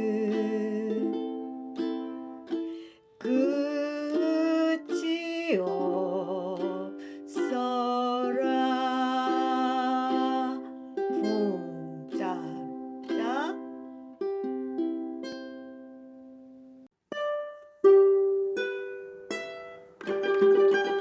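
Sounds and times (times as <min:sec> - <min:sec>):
person singing long notes: 0:00.0 - 0:13.9
fingerpicked ukulele: 0:00.0 - 0:21.0.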